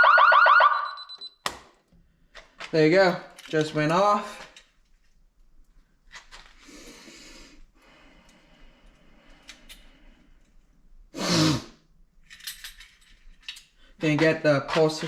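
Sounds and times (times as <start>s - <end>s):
person breathing: 6.6s - 11.8s.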